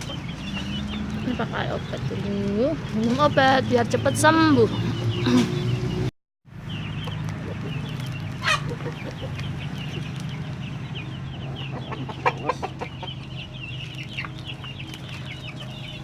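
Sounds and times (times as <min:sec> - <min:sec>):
chickens clucking and calling: 0:00.0 - 0:06.0, 0:06.7 - 0:16.0
chicken squawk: 0:08.4 - 0:09.4, 0:11.6 - 0:13.2.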